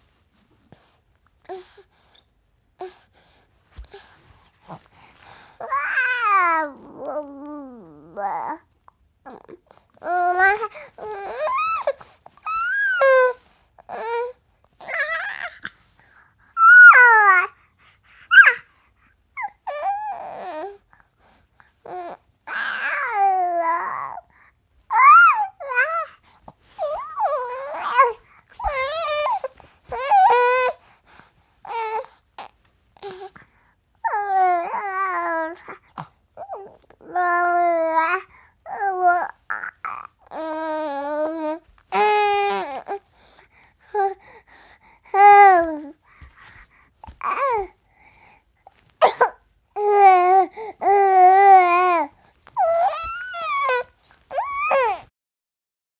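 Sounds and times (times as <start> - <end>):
baby babbling: 5.6 - 8.7, 9.3 - 11.9, 12.5 - 15.7, 16.6 - 17.6, 18.3 - 18.6, 21.9 - 24.2, 24.9 - 26.2, 26.8 - 30.8, 34.0 - 35.8, 36.4 - 43.0, 45.1 - 46.0, 47.0 - 47.8, 49.0 - 55.0.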